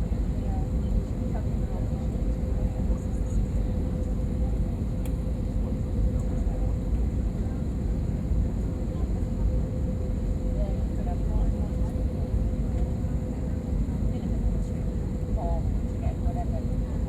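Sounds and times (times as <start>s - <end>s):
rumble of engines and airflow: 0.0s - 17.0s.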